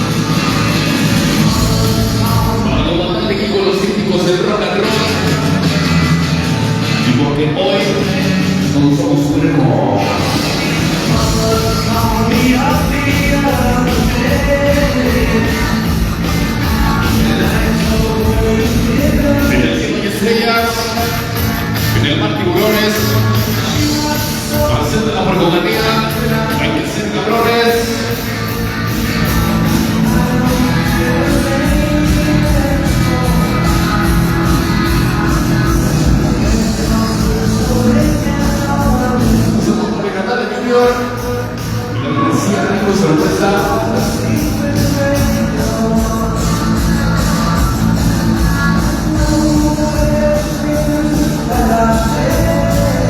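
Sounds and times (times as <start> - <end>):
loud rock and roll music: 0.0 - 53.0.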